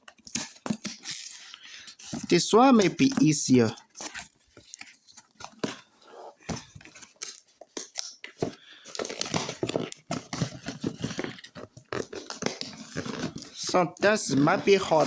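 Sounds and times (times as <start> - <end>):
packaging scraping and tearing: 0.0 - 15.0.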